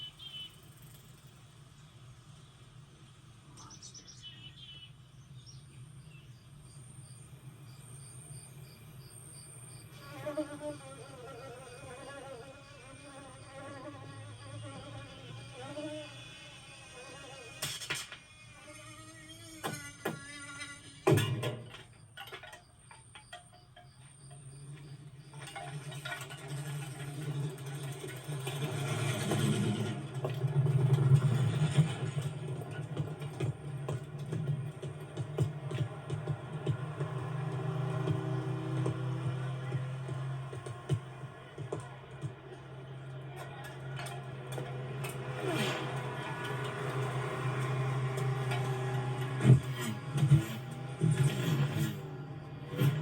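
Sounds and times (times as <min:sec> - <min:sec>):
low engine-like hum: 0:00.0 - 0:17.6, 0:18.4 - 0:53.0
insect chirps: 0:03.6 - 0:17.6, 0:18.2 - 0:27.4.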